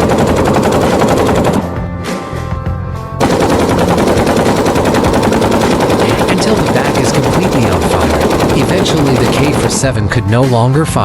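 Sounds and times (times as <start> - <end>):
rifle firing automatic bursts: 0.0 - 1.7, 3.2 - 9.9.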